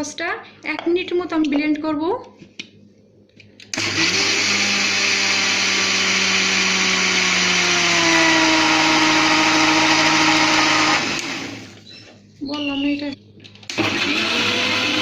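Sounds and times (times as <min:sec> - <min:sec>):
electric blender running: 0:03.8 - 0:11.8, 0:13.7 - 0:15.0.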